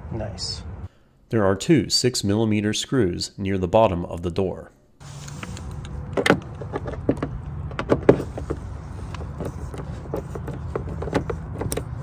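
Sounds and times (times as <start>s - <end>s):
low mechanical hum: 5.0s - 12.0s.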